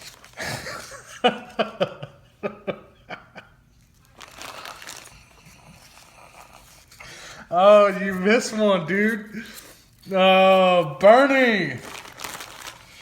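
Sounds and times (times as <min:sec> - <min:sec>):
packing peanuts rustling: 0:00.0 - 0:01.1, 0:03.9 - 0:13.0
packing peanuts clicking and squeaking: 0:04.0 - 0:06.6, 0:09.4 - 0:13.0.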